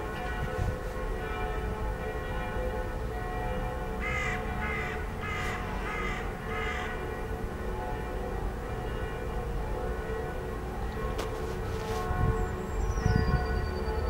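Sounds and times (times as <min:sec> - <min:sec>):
crow cawing: 0:04.1 - 0:07.0.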